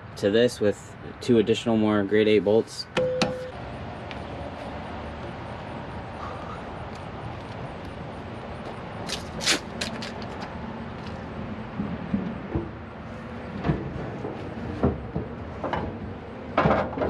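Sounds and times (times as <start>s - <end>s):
steady outdoor rumble: 0.0s - 17.0s
metal clanks and knocks: 13.6s - 17.0s.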